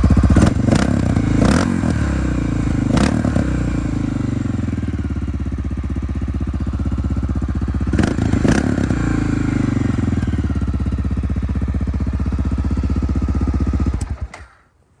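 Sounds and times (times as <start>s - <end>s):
engine revving bursts: 0.0s - 5.0s, 7.8s - 10.7s
motorcycle engine idling: 0.0s - 14.4s.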